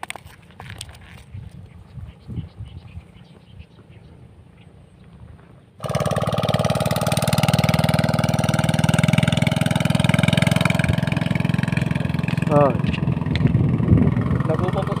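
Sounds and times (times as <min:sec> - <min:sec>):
small engine running: 0:05.8 - 0:15.0.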